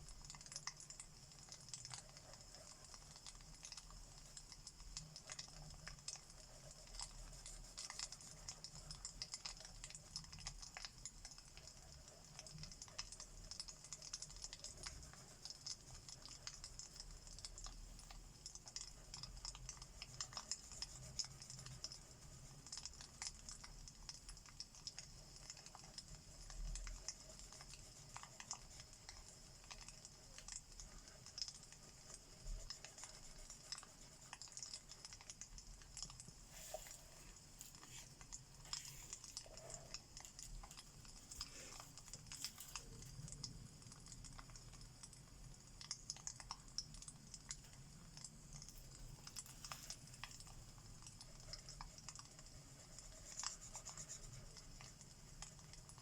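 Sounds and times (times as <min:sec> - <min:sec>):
wood fire crackling: 0:33.5 - 0:52.0.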